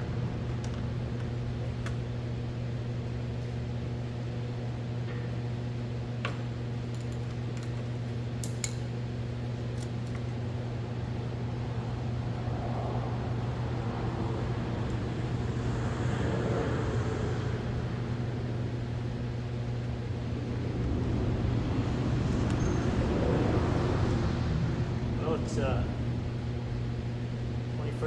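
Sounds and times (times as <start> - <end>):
electric motor hum: 0.0 - 3.4, 11.1 - 27.8.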